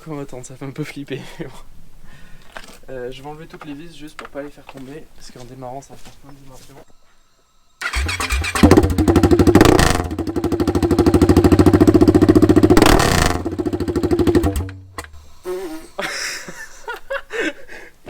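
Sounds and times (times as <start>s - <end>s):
motorcycle engine revving: 7.8s - 15.0s.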